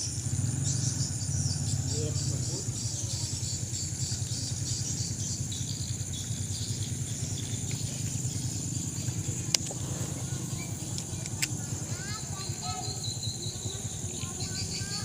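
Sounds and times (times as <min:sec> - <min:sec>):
insects calling in a chorus: 0:00.0 - 0:15.0.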